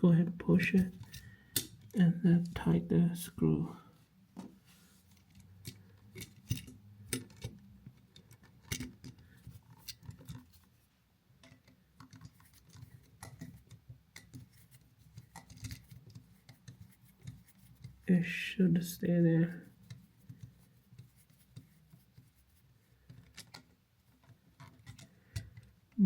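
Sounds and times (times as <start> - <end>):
screwdriver metal clicks and scrapes: 0.9 - 1.9, 5.1 - 10.7, 11.5 - 18.0.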